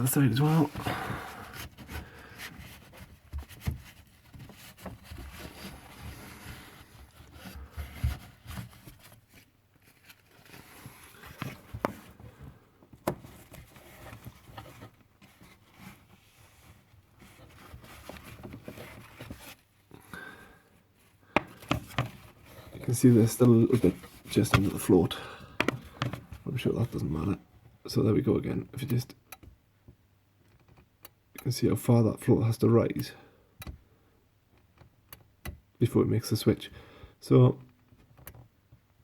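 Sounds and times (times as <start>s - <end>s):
paper towel rubbing plastic: 0.0s - 12.1s.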